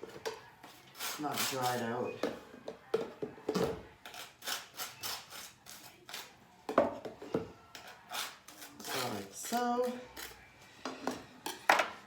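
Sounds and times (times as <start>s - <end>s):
knife scraping mayonnaise on bun: 4.0s - 6.4s, 7.8s - 10.4s.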